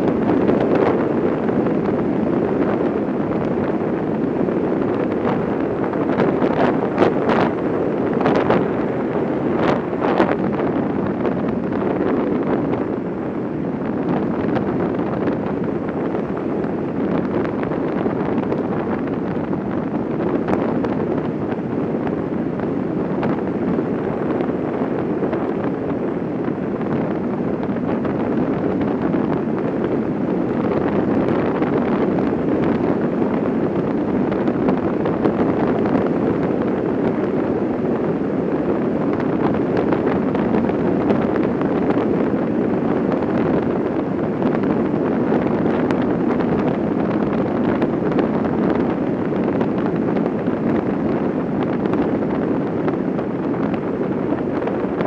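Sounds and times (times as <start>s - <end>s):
wind and road noise: 0.0s - 55.0s.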